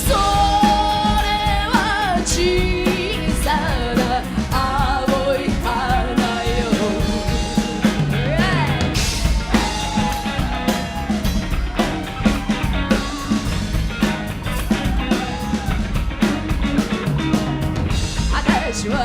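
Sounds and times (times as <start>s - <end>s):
bass guitar: 0.0s - 19.0s
drum kit beat: 0.0s - 19.0s
electric guitar: 0.0s - 19.0s.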